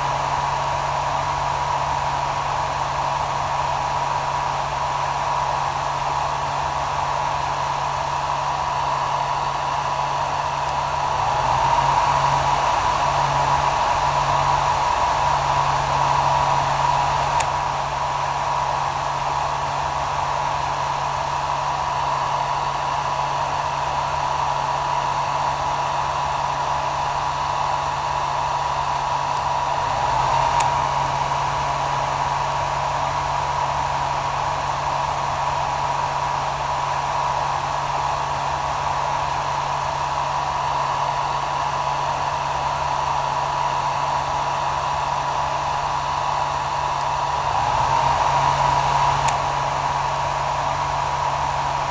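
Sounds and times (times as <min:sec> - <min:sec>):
hair dryer running: 0:00.0 - 0:51.9.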